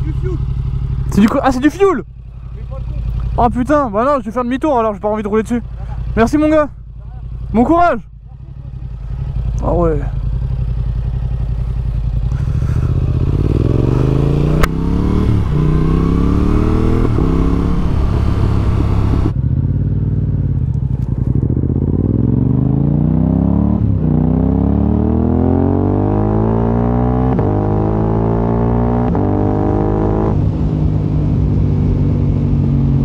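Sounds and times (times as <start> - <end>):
motorcycle engine accelerating: 0.0 - 33.0
sharp click: 14.6 - 14.8.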